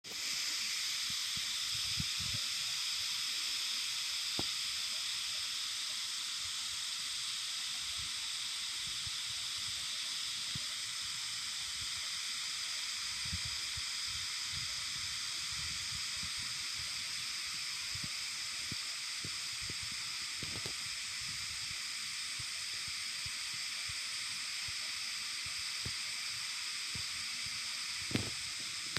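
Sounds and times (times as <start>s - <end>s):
cicadas droning: 0.1s - 28.9s.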